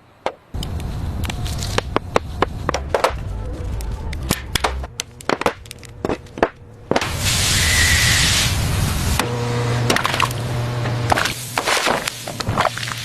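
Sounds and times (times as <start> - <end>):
low rumble: 0.6 - 9.3.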